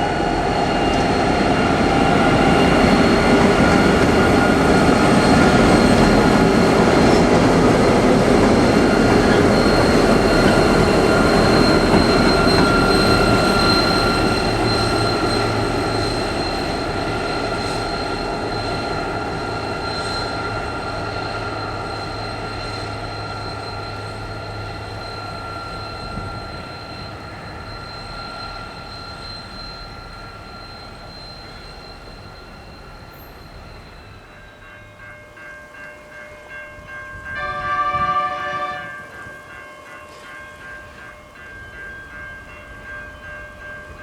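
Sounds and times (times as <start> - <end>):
train rumble: 0.0 - 44.0
high-pitched wheel squeal: 8.6 - 34.3.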